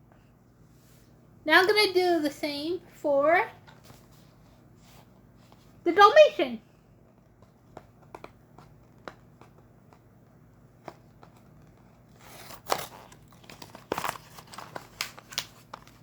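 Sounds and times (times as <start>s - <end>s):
plastic packaging crinkling: 11.2s - 16.0s.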